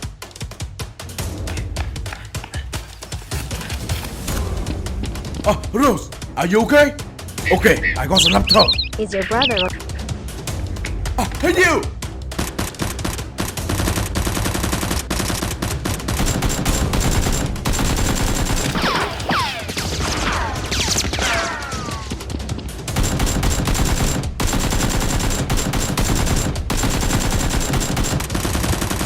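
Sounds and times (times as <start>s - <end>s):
rapid machine-gun fire: 12.3s - 29.0s.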